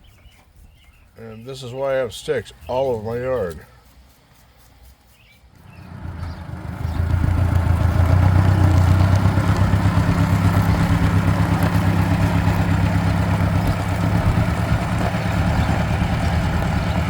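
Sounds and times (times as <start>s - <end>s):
tractor engine idling: 5.5s - 17.0s.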